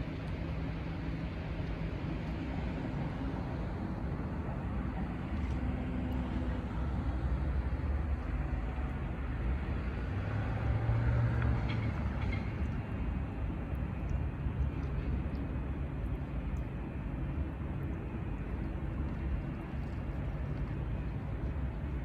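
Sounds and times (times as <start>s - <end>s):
traffic rumble: 0.1s - 22.0s
passing vehicle engine hum: 2.7s - 22.0s.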